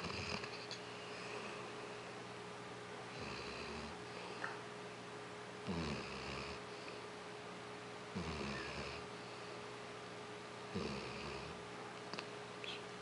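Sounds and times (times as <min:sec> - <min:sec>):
dog snoring: 0:00.0 - 0:00.6, 0:03.1 - 0:04.2, 0:05.6 - 0:07.0, 0:08.1 - 0:09.5, 0:10.7 - 0:11.6.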